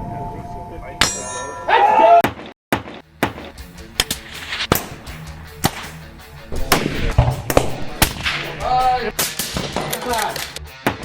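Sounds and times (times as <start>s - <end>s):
sharp percussive hits: 2.3s - 11.0s
background music: 2.8s - 11.0s.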